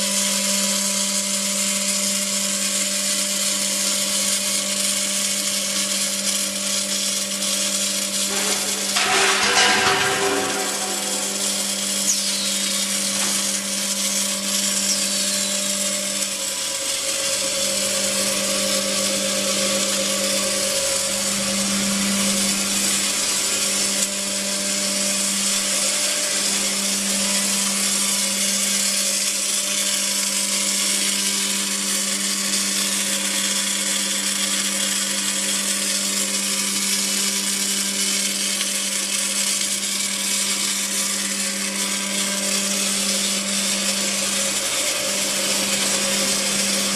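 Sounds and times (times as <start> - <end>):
machinery humming: 7.6 - 28.9, 41.6 - 46.9.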